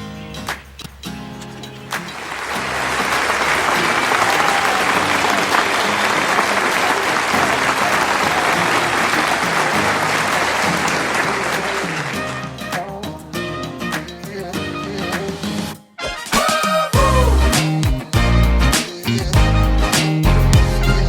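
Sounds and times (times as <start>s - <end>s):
crowd applause: 1.9s - 12.8s
instrumental background music: 8.3s - 21.0s.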